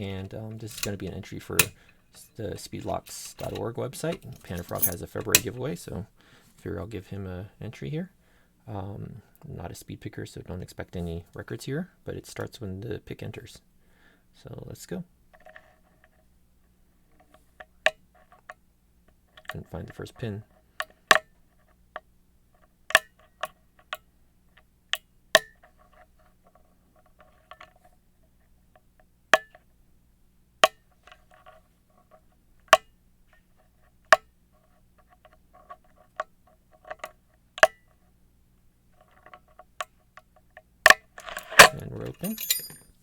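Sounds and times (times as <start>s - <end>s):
pick rattling against pins: 0.0s - 5.6s, 41.2s - 43.0s
lock pin clicks: 0.7s - 1.9s, 2.9s - 5.5s, 41.2s - 42.9s.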